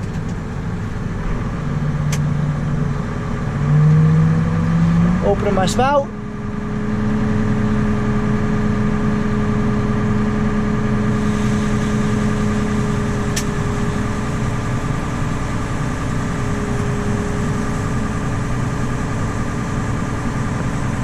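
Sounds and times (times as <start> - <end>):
tractor engine running: 0.0 - 21.0
auger running: 10.3 - 21.0.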